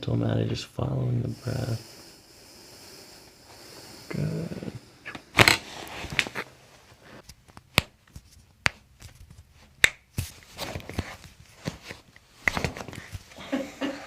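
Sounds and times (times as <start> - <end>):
soft rustling: 5.6 - 13.4.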